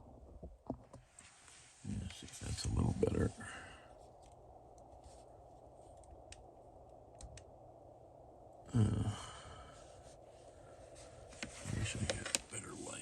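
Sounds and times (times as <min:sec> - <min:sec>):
man sighing loudly: 0:08.7 - 0:09.8.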